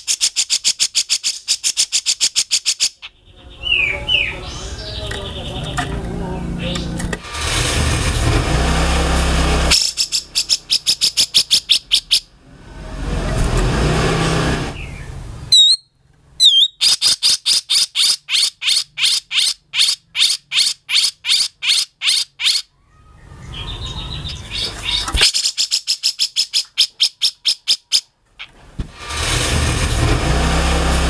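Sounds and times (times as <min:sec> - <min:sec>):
bulbul calling: 0:00.0 - 0:07.2, 0:09.7 - 0:12.3, 0:14.8 - 0:28.5.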